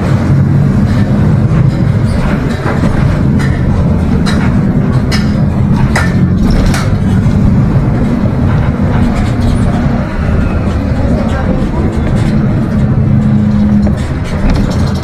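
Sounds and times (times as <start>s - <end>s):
bus diesel engine running: 0.0s - 15.0s
sharp knocks: 0.8s - 7.6s
body rattles: 0.8s - 15.0s.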